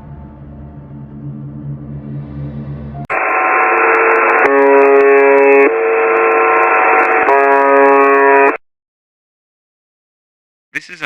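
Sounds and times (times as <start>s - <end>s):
low rumbling music: 0.0s - 3.1s.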